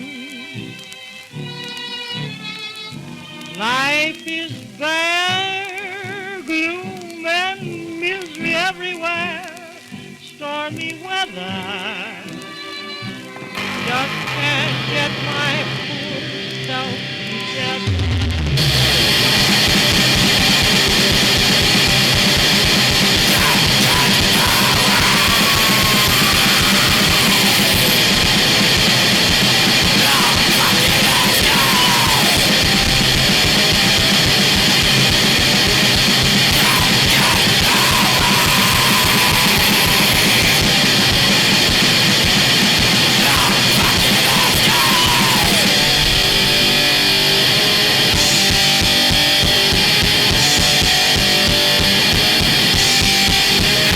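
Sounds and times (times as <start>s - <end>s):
chaotic noise music: 13.2s - 53.9s
whining pitch glides: 18.5s - 49.1s.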